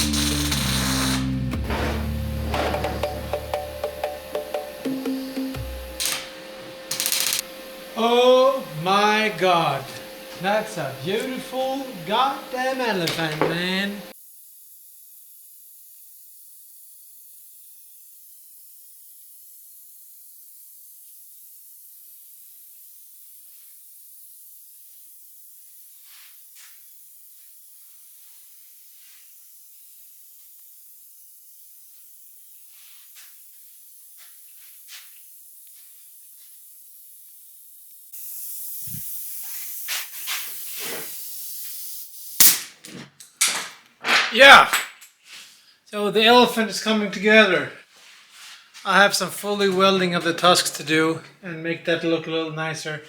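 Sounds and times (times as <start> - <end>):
sharp knocks: 1.6 - 5.6
faint high-pitched hiss: 11.0 - 42.6.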